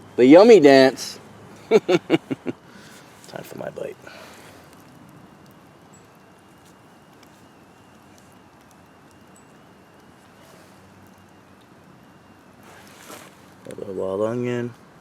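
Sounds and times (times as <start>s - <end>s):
faint steady hiss: 0.0s - 15.0s
soft ticks: 4.7s - 10.2s.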